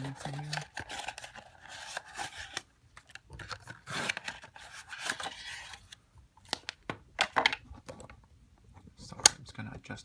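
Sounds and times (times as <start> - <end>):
paper and cardboard rustling: 0.0 - 6.0.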